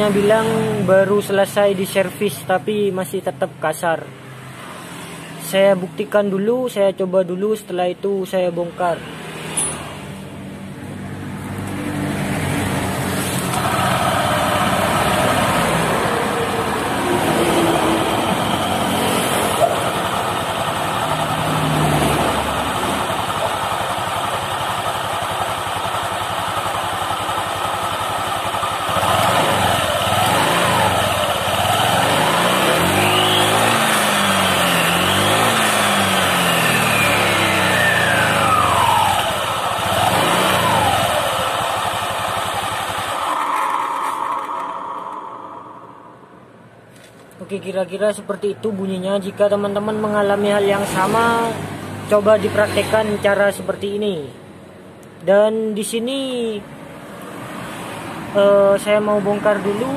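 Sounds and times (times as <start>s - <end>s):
scooter engine revving: 9.1s - 46.1s.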